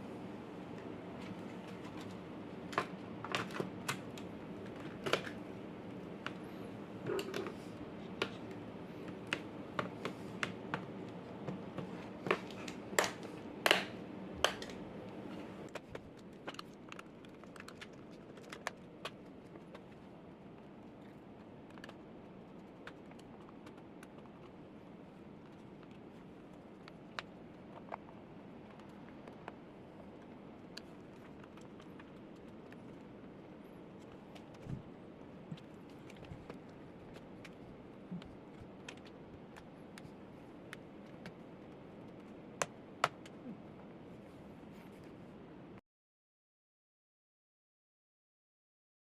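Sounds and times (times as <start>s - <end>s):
steady low hum: 0.0s - 45.8s.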